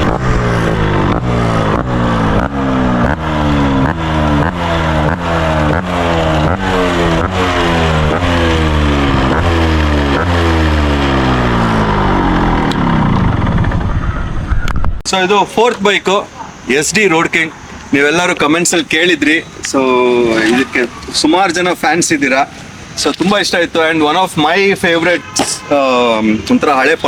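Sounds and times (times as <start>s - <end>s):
motorcycle engine revving: 0.0s - 15.0s.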